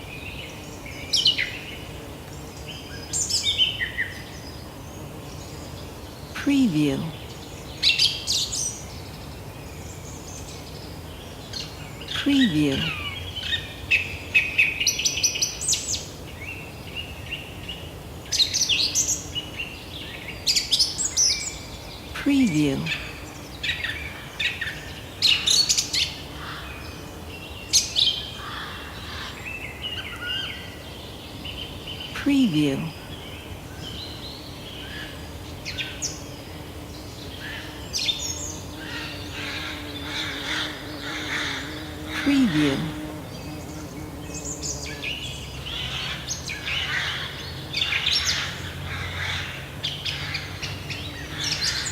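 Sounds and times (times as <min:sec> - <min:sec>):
forest birds chirping: 0:00.0 - 0:51.9
birds chirping and trilling: 0:32.9 - 0:51.9.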